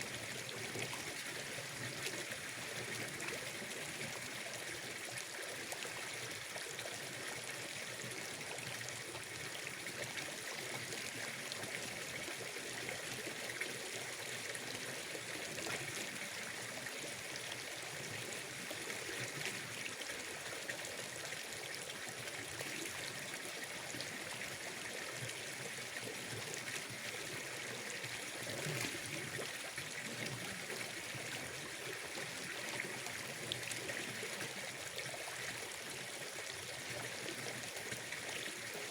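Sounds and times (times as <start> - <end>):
trickle of running water: 0.0 - 38.9.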